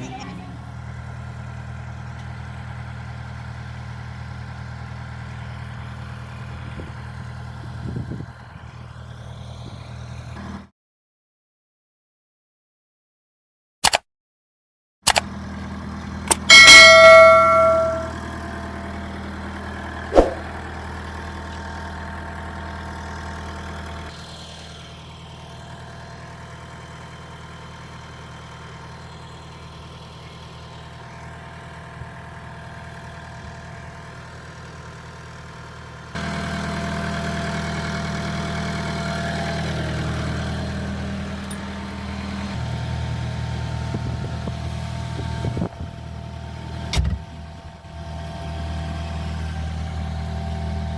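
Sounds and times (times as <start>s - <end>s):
diesel engine running: 0.0s - 10.7s, 15.1s - 50.9s
metallic clang: 16.3s - 18.2s
sharp metal clank: 16.3s - 18.2s.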